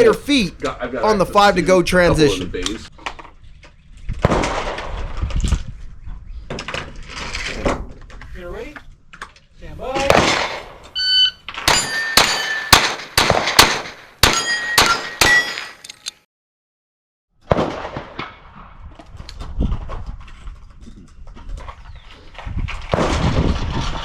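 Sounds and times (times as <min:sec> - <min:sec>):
shot timer beep: 0:11.0 - 0:11.4
pistol shots: 0:11.6 - 0:15.7
bullets ringing off steel plates: 0:11.7 - 0:12.9, 0:14.2 - 0:15.8.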